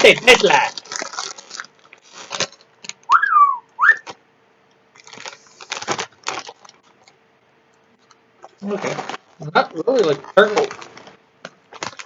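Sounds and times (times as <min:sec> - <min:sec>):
crunching of chips being chewed: 0:00.1 - 0:03.0, 0:04.9 - 0:07.2, 0:08.0 - 0:12.0
two-part whistle: 0:03.1 - 0:04.1.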